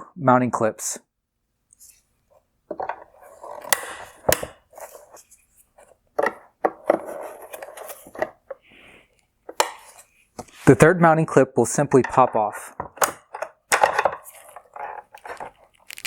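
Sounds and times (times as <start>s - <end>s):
plastic clips clicking and knocking: 2.7s - 4.7s, 9.5s - 10.0s, 12.0s - 16.0s
plastic scraping and rubbing: 2.7s - 10.8s, 12.0s - 16.0s.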